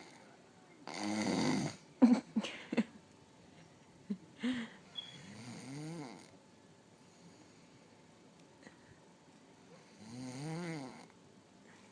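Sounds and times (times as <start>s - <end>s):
man snoring: 0.9s - 1.8s, 5.3s - 6.3s, 9.9s - 11.1s.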